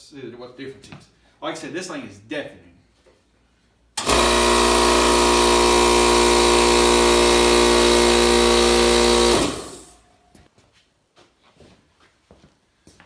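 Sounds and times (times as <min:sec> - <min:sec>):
air compressor running: 0:04.0 - 0:10.0.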